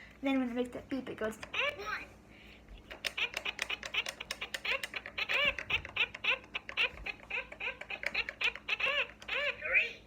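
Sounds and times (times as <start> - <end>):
toy speaker electronic chirps: 3.0 - 9.8.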